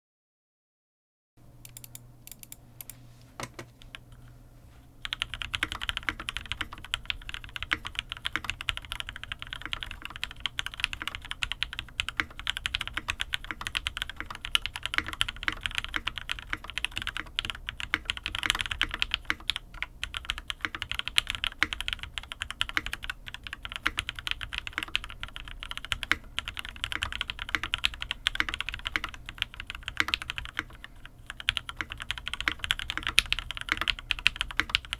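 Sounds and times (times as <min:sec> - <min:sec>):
mechanical keyboard typing: 0:01.6 - 0:02.6, 0:05.0 - 0:34.9.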